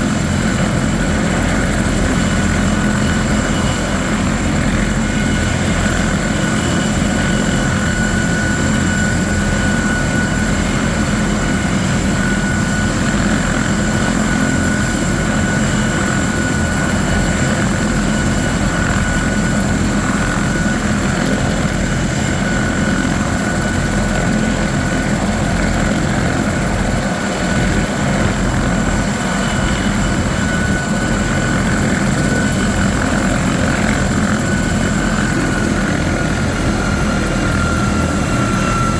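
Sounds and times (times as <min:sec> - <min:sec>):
helicopter rotor noise: 0:00.0 - 0:38.9
high turbine whine: 0:00.0 - 0:38.9.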